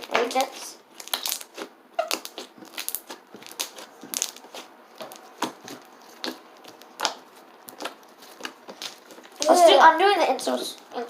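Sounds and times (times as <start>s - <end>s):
slime crackling and popping: 0.0s - 9.6s.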